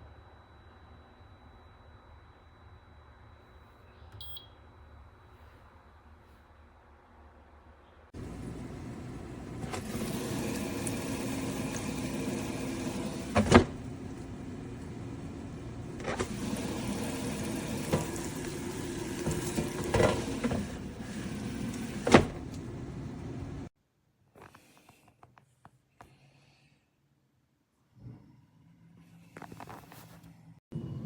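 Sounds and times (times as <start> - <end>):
air fryer fan running: 8.2 - 23.7.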